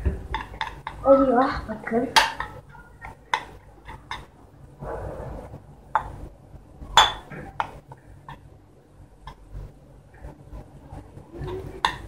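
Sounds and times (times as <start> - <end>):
spoon clinking against a bowl: 7.0 - 7.8.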